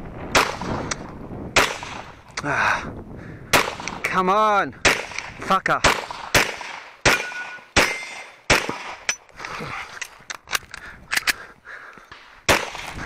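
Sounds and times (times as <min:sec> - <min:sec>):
loud pistol shots: 0:00.3 - 0:00.8, 0:01.6 - 0:02.1, 0:03.5 - 0:04.0, 0:04.8 - 0:09.1, 0:12.5 - 0:12.9.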